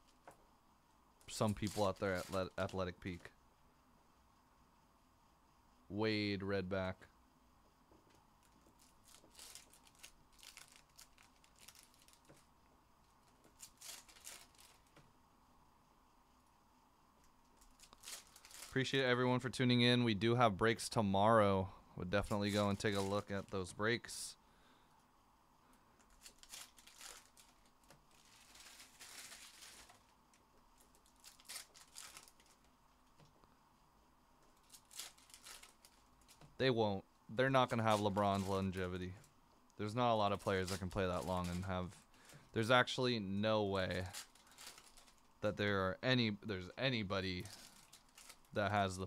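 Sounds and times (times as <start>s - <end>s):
card packs rustling and crinkling: 1.3s - 3.3s, 8.4s - 12.5s, 13.2s - 15.0s, 17.6s - 19.0s, 22.1s - 23.9s, 26.0s - 32.7s, 34.5s - 36.6s, 37.4s - 42.7s, 43.8s - 45.3s, 46.8s - 49.0s.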